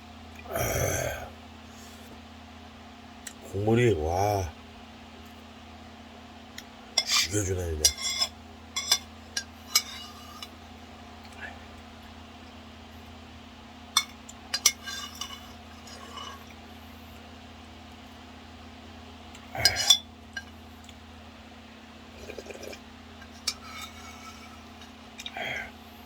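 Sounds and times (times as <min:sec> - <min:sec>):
steady low hum: 0:00.0 - 0:26.0
utensils clinking against bowl: 0:07.0 - 0:10.5, 0:19.6 - 0:20.5
slurp of broth: 0:22.2 - 0:22.8.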